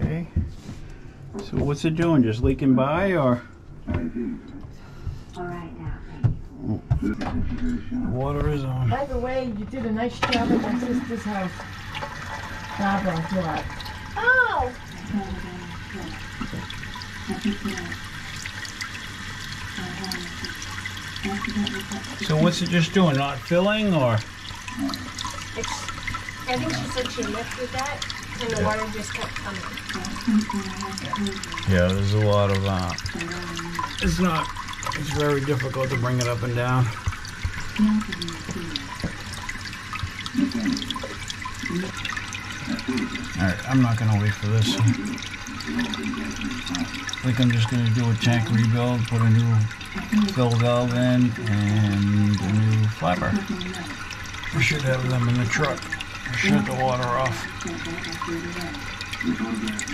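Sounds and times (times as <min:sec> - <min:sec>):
toilet water running: 0:00.0 - 0:59.9.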